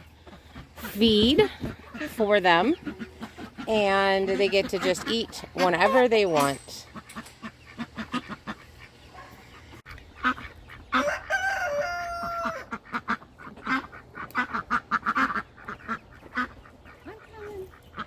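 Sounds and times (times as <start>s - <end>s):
chickens clucking: 0.0s - 18.0s
rooster crowing: 11.0s - 12.7s.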